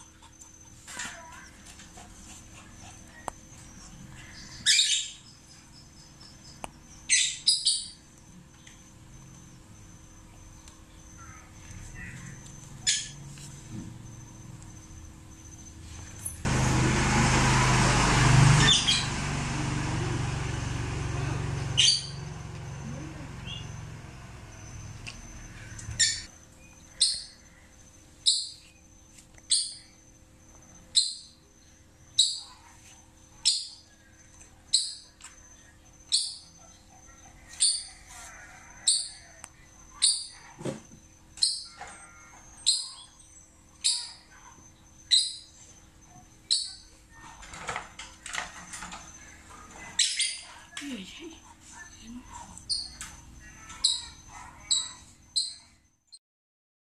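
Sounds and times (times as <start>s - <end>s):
bird chirping: 3.4s - 13.3s, 21.7s - 38.1s, 41.3s - 47.0s, 48.7s - 51.0s, 51.8s - 55.8s.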